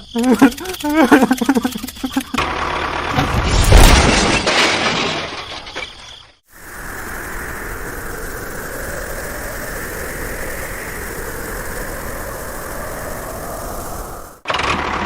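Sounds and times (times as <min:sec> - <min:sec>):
engine running steadily: 0:00.5 - 0:03.6, 0:06.6 - 0:15.0.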